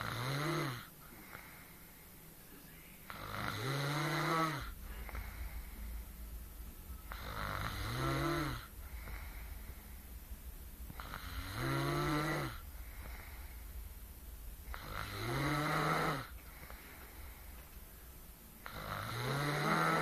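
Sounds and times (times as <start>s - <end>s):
woman snoring: 0.0s - 1.5s, 3.1s - 5.7s, 7.1s - 9.8s, 10.9s - 13.6s, 14.7s - 17.4s, 18.6s - 20.0s.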